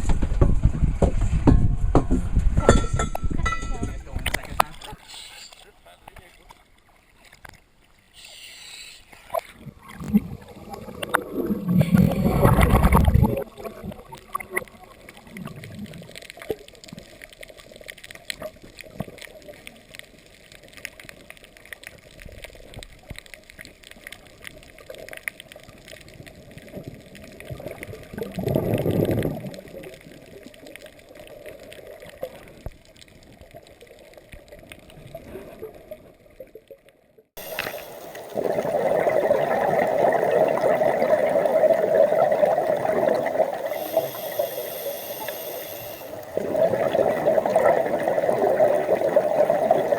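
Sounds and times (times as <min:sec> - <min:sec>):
sea water gurgling and sloshing: 0:00.0 - 0:49.9
steady rush of water: 0:37.4 - 0:49.9.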